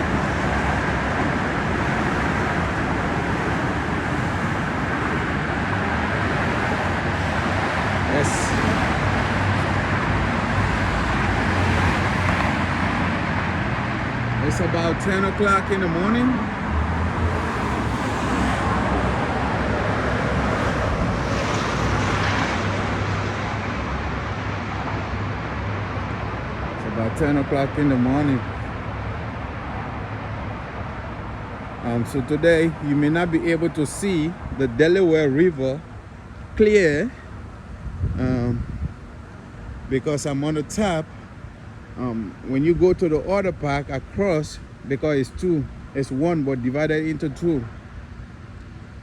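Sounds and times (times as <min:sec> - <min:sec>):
road traffic passing: 0:00.0 - 0:49.0.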